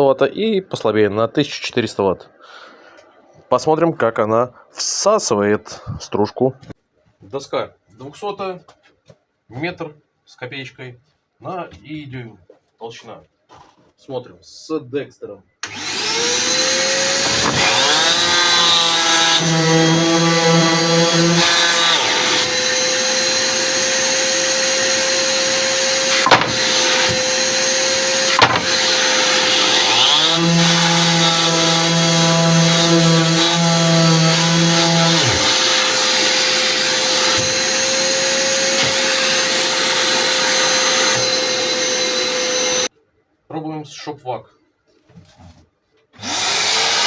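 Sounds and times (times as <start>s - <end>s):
vacuum whine: 15.6s - 30.7s, 34.2s - 42.9s.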